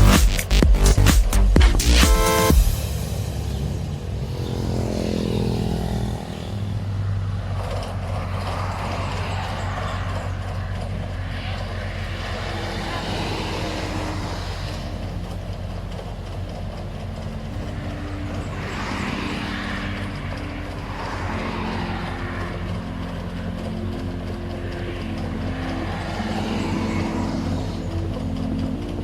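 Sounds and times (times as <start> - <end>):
combine harvester engine running: 0.0 - 29.0.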